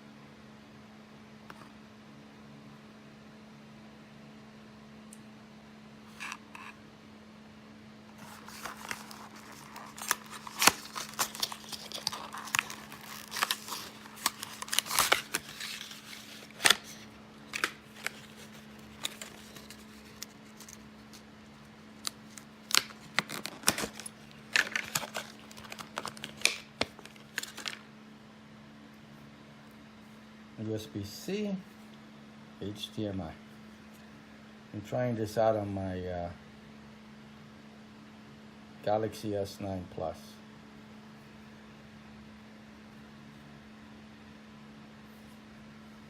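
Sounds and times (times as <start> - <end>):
plastic rustling and crinkling: 8.1 - 21.3, 21.9 - 27.8.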